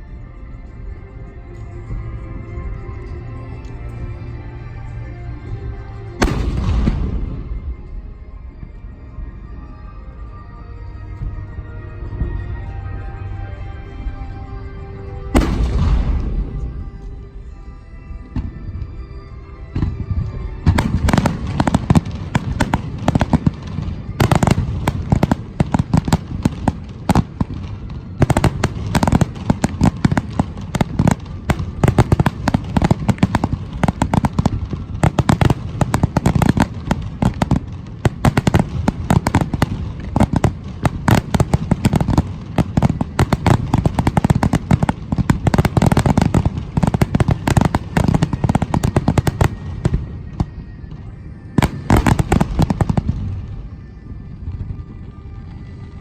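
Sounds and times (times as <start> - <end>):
fireworks bangs and crackles: 6.2 - 8.9, 15.2 - 17.6, 19.6 - 56.0.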